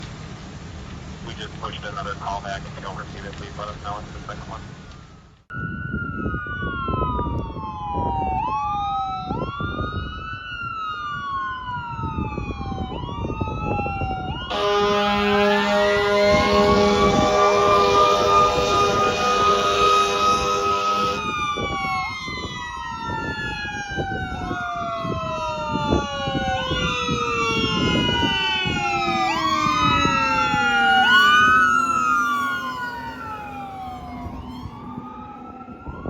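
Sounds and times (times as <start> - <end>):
second siren tone falling: 4.9 - 36.0
siren wailing up and down: 5.0 - 36.0
fire engine air horn: 14.3 - 22.6, 25.0 - 35.0.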